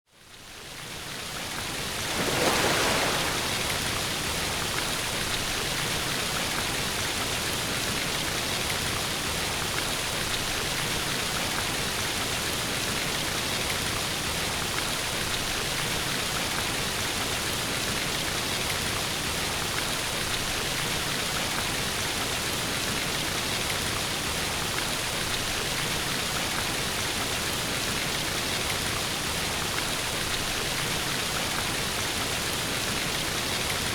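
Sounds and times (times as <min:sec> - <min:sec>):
waterfall rushing water: 0:01.9 - 0:04.8.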